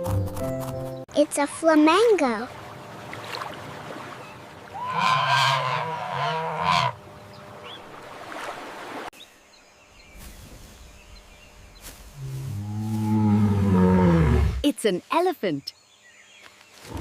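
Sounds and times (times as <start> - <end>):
flamingo honking: 4.7 - 7.8.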